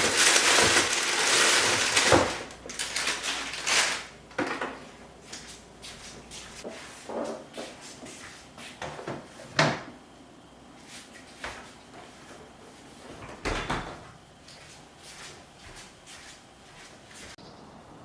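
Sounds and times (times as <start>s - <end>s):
kitchen drawers and containers clattering: 0.0s - 4.9s.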